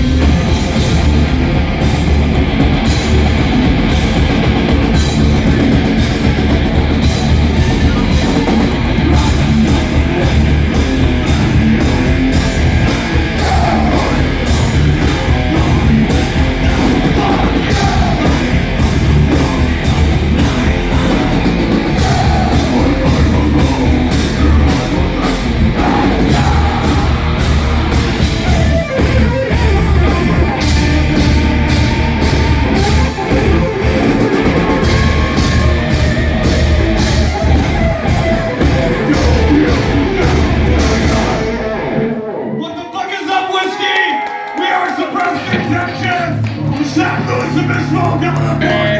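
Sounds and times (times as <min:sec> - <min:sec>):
drum kit and cymbals: 0:00.0 - 0:41.8
bass guitar: 0:00.0 - 0:42.6, 0:45.4 - 0:48.9
electric guitars: 0:00.0 - 0:42.6
person singing: 0:07.3 - 0:12.0, 0:13.3 - 0:28.6, 0:29.5 - 0:42.3.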